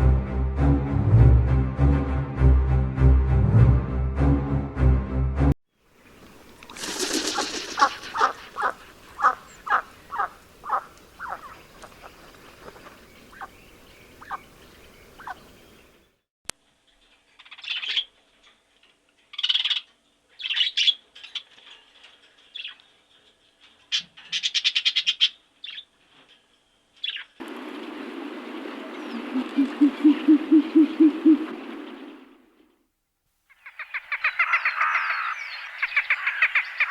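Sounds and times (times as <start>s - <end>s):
birds calling: 6.0s - 16.2s, 27.0s - 32.7s, 33.5s - 36.9s
frog croaking: 8.2s - 11.5s
steady hiss: 27.4s - 30.5s.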